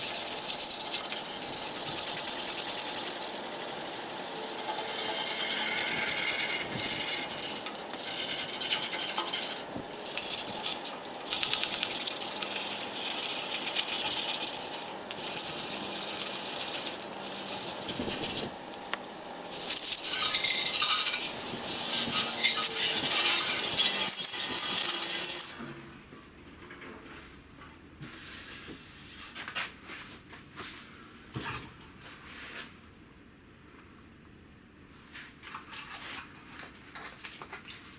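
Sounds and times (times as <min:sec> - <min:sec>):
abrasive rubbing on rusty steel: 0:00.0 - 0:18.5, 0:19.5 - 0:25.6.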